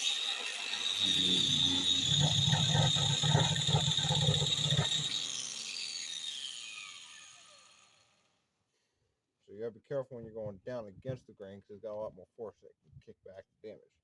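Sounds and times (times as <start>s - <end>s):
angle grinder grinding wood: 0.0s - 7.9s
grinder disc spinning down: 0.0s - 8.0s.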